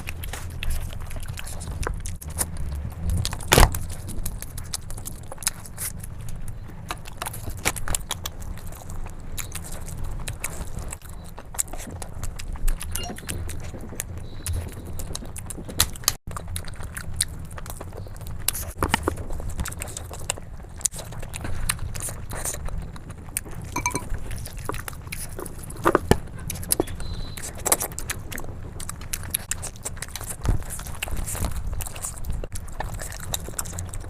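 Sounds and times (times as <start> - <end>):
wet chewing and mouth noises: 0.0 - 34.0
low hum: 23.7 - 24.5.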